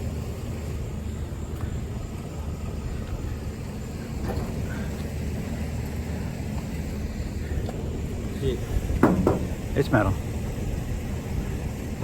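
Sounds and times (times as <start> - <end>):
vehicle engine idling: 0.0 - 12.0
faint knocks: 9.0 - 9.6.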